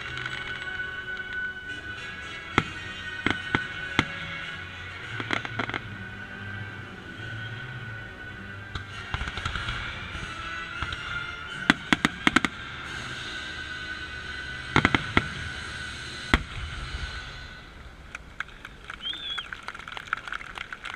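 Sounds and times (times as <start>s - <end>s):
fireworks crackling: 0.0s - 6.0s, 8.7s - 20.9s
show music: 0.0s - 17.4s
fireworks bangs: 5.0s - 5.9s, 8.8s - 13.3s, 14.5s - 17.5s.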